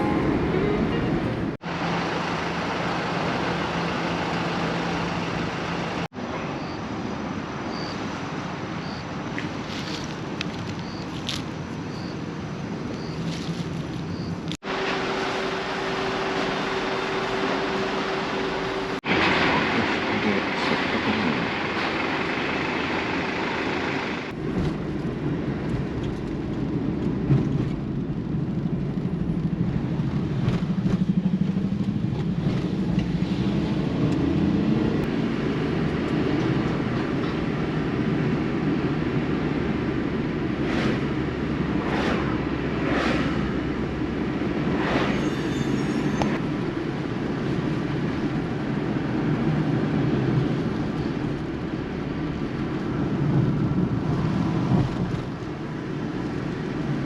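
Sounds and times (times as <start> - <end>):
car road and engine rumble: 0.0 - 57.0.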